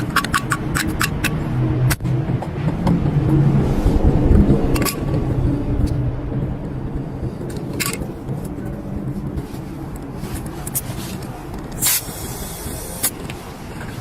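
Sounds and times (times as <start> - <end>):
steady low rumble: 0.0 - 14.0
short hisses of air: 11.8 - 13.1.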